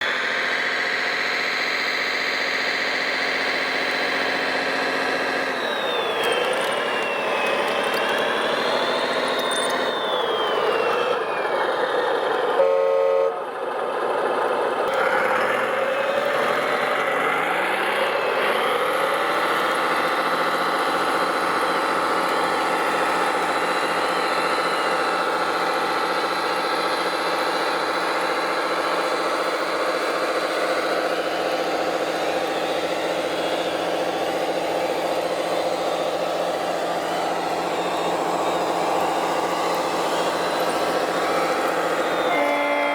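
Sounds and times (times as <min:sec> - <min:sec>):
rc truck engines: 0:00.0 - 0:42.9
short horn blast: 0:12.6 - 0:13.4, 0:42.1 - 0:42.9.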